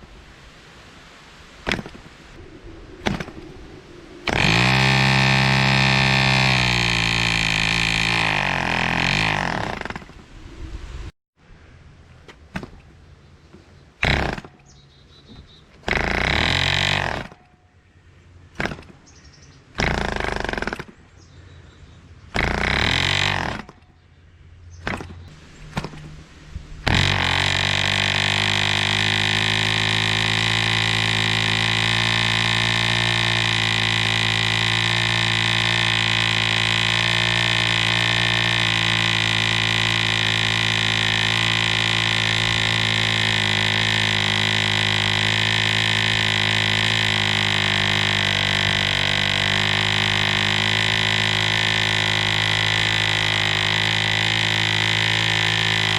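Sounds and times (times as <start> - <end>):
model airplane engine running: 24.9 - 55.9.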